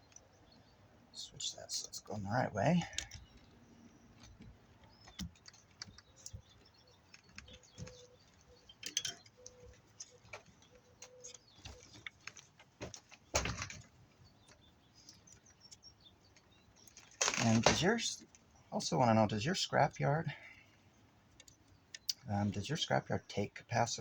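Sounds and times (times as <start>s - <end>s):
metal parts clinking: 8.8s - 9.4s.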